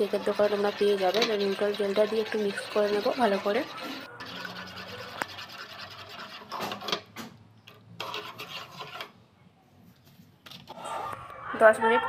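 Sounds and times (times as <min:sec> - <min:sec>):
utensil stirring and scraping pot: 0:00.0 - 0:09.2.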